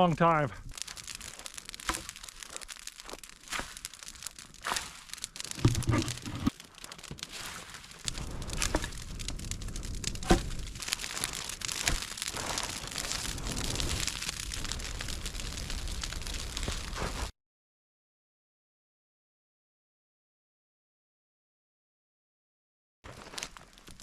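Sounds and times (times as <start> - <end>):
wood and brush crackling: 0.0 - 17.3, 23.1 - 24.0.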